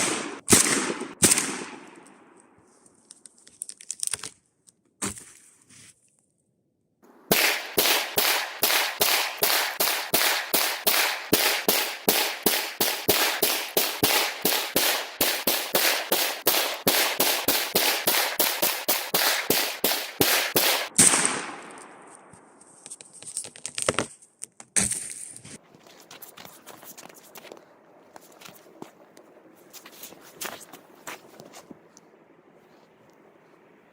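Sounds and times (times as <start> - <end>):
shotgun firing rapidly: 0.0 - 1.9, 7.3 - 21.7.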